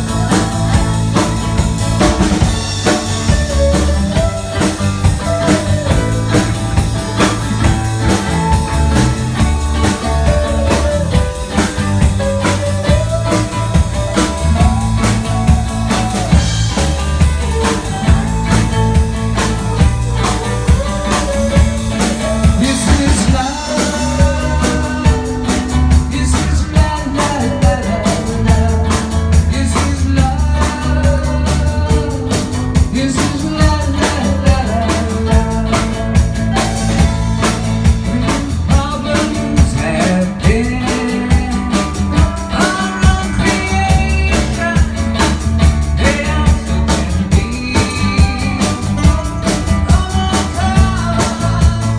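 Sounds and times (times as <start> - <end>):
live rock band playing: 0.0 - 51.9.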